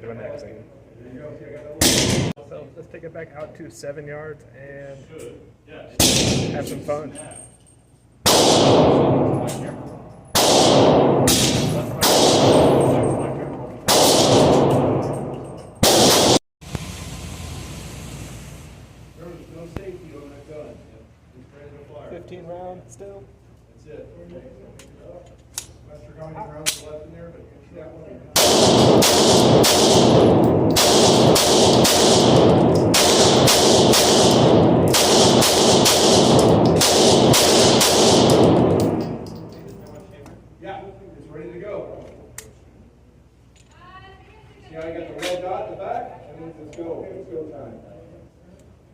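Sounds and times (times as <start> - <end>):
pistol shots echoing: 8.2 - 16.4, 28.4 - 39.5.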